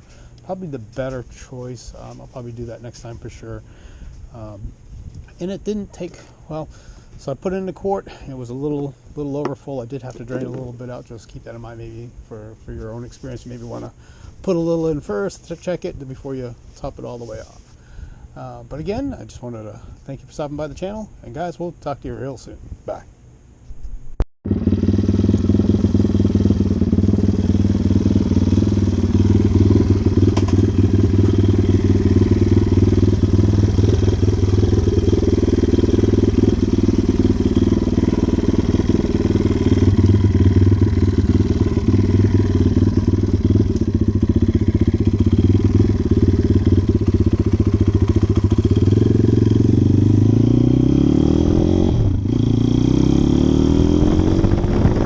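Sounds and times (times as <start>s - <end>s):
motorcycle engine revving: 24.4s - 55.0s.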